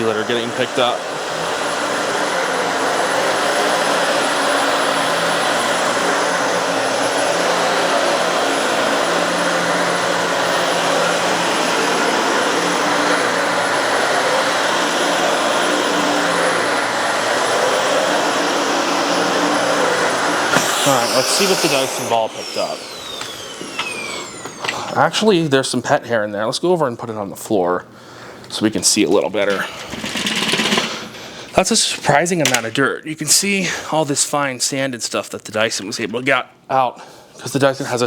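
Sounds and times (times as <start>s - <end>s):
vacuum cleaner running on carpet: 0.0s - 25.4s, 29.9s - 31.3s.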